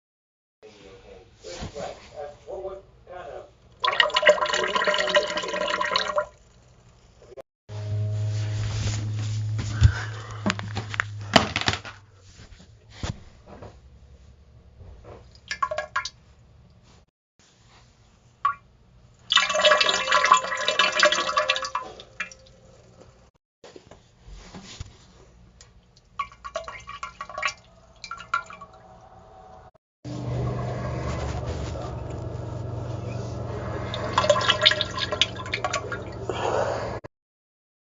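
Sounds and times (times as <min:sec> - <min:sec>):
low steady drone: 0:07.7 - 0:11.5, 0:28.8 - 0:37.0
low hum: 0:07.7 - 0:12.9, 0:27.6 - 0:37.0.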